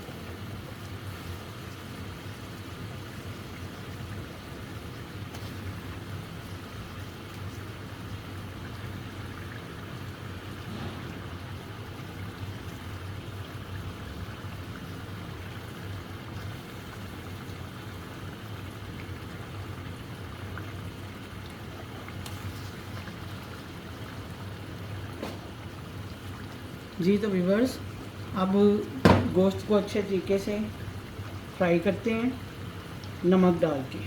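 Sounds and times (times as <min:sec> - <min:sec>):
chicken sizzling in hot oil: 0:00.0 - 0:33.2.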